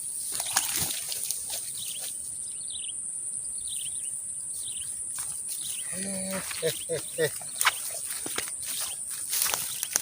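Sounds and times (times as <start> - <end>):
bird chirping: 1.6 - 10.0.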